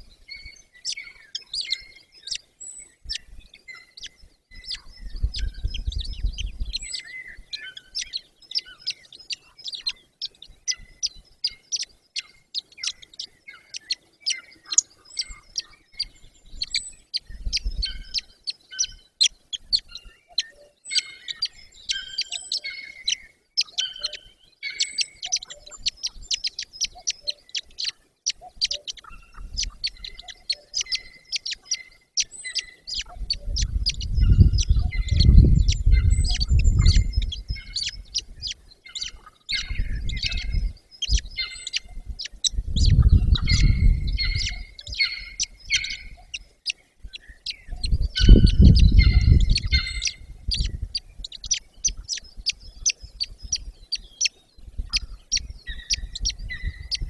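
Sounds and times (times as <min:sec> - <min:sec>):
birds chirping: 0:00.0 - 0:57.0
low rumble: 0:32.9 - 0:38.5.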